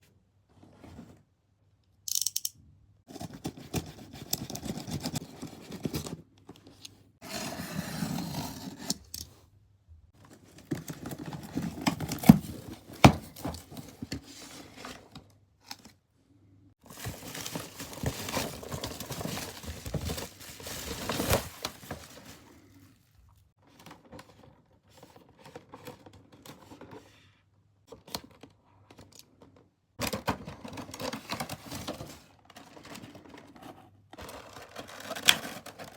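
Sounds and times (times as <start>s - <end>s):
packaging crinkling and tearing: 16.8s - 22.7s, 34.2s - 35.9s.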